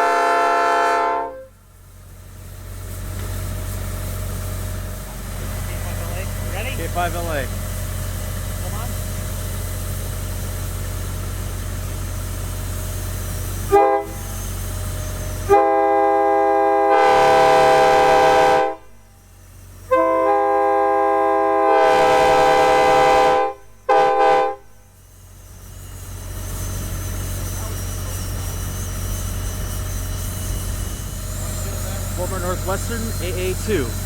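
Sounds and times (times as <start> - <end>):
locomotive air horn chord: 0.0 - 1.7, 13.6 - 14.5, 15.4 - 19.1, 19.8 - 24.9
low engine hum: 0.0 - 23.9, 24.6 - 34.0.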